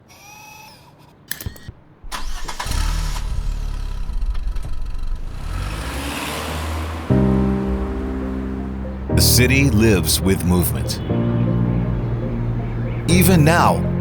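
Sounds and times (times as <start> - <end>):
sharp clicks: 1.3 - 2.6
car engine starting and running: 1.3 - 14.0.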